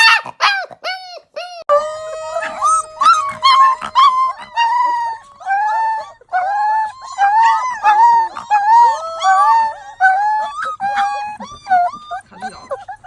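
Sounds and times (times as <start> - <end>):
puppies whining and yipping: 0.0 - 13.0
puppies yelping: 0.0 - 13.0
puppy howling: 0.0 - 13.0.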